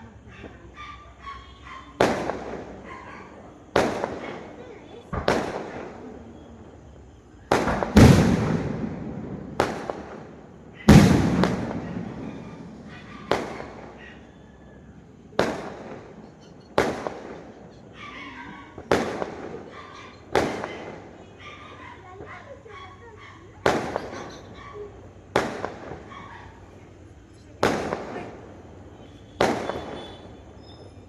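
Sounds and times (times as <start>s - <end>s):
fireworks bangs echoing: 1.9s - 22.5s, 23.5s - 31.0s.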